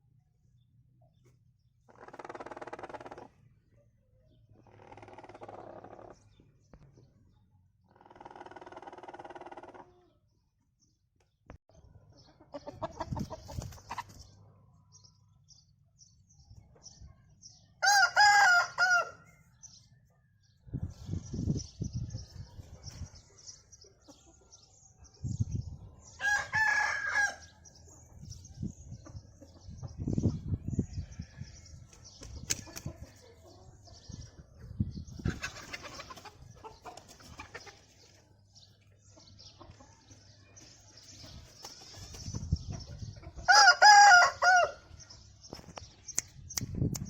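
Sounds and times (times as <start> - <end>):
rooster crowing: 43.5 - 44.8.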